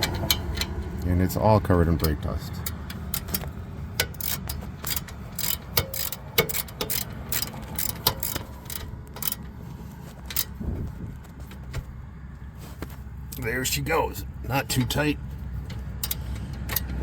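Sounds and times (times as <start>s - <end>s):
ratchet wrench clicking: 0.0s - 1.0s, 2.0s - 9.5s, 10.2s - 10.6s, 15.7s - 17.0s.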